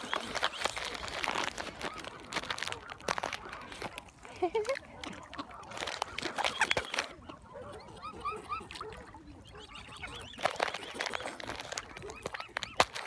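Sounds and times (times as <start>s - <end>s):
rustling: 0.0s - 4.6s, 10.3s - 13.0s
birds calling: 5.6s - 13.0s.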